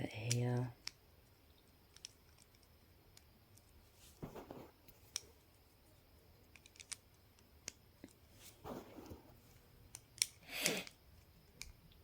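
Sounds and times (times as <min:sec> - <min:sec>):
brief scraping rustles: 0:04.0 - 0:04.8
plastic pieces clicking: 0:06.5 - 0:08.2, 0:09.9 - 0:12.0.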